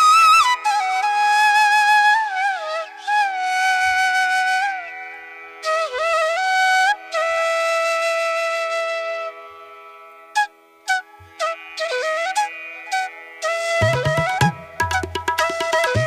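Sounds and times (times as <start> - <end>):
flute sliding between pitches: 10.4 - 16.0.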